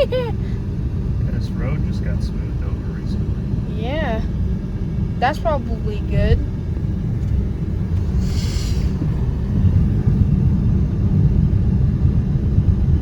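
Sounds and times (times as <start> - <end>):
car driving rumble inside cabin: 0.0 - 13.0
brief hiss: 8.0 - 9.1.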